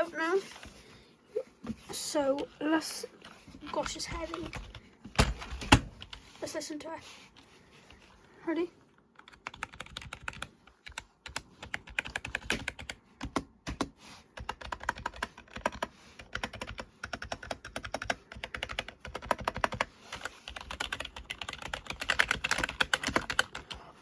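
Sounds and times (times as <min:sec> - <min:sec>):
keyboard typing clatter: 0:03.6 - 0:06.2, 0:09.2 - 0:23.9.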